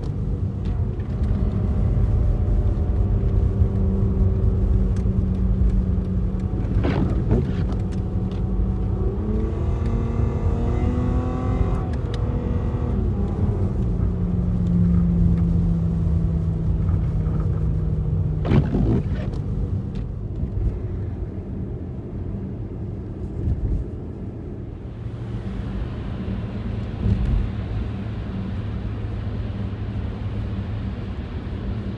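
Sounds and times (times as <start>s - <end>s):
car engine drone: 0.0s - 23.3s
road rumble: 0.0s - 31.9s.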